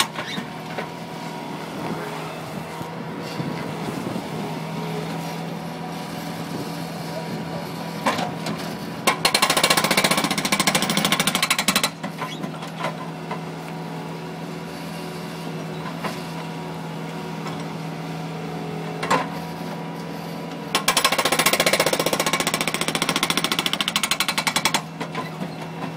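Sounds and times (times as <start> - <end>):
engine running: 0.0 - 25.9
hydraulic breaker hammering pavement: 8.0 - 13.4, 20.7 - 25.9.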